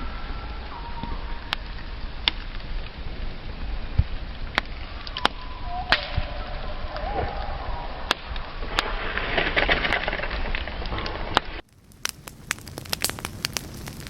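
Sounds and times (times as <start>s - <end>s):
faint thin whistling tone: 0.0s - 1.9s, 4.8s - 8.1s
campfire crackling: 0.0s - 14.0s
sharp fire pops: 3.9s - 14.0s.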